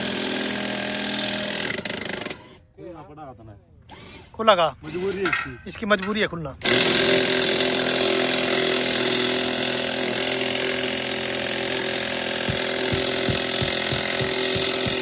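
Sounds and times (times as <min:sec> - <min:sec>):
impact wrench hammering: 0:12.3 - 0:15.0
low thumps: 0:12.4 - 0:15.0.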